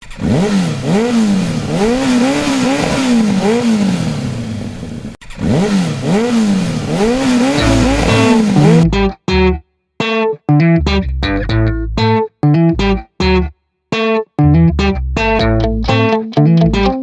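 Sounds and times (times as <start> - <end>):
motorcycle engine revving: 0.0 - 8.9
guitar music: 7.1 - 17.0.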